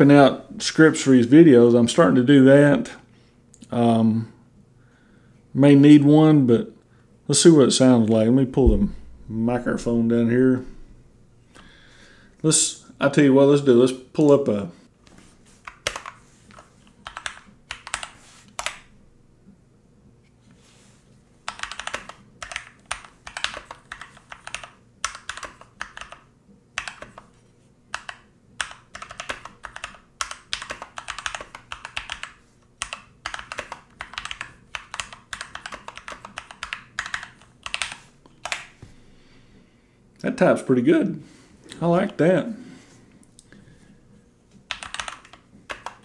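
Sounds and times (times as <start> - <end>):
mechanical keyboard typing: 15.6 - 18.8, 21.5 - 27.3, 27.9 - 38.7, 44.7 - 46.0.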